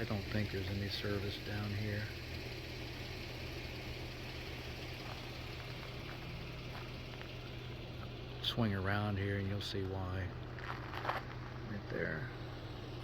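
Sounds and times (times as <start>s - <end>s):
vehicle engine humming: 0.0s - 13.0s.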